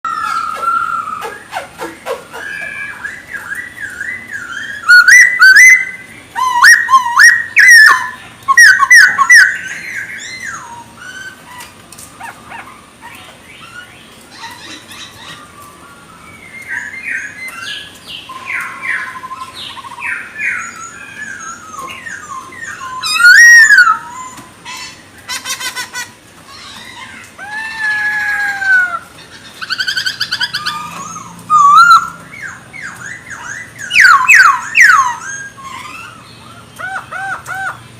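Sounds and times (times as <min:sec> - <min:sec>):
songbird whistling: 0:02.4 - 0:11.4, 0:15.8 - 0:24.4, 0:29.6 - 0:36.2.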